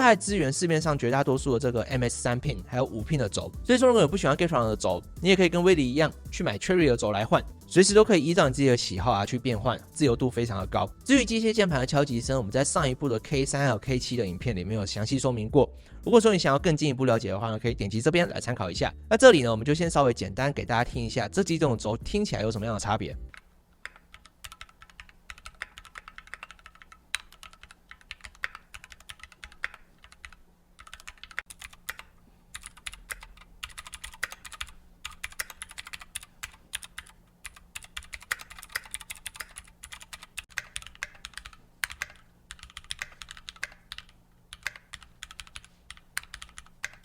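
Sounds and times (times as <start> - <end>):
mechanical keyboard typing: 23.3 - 47.0.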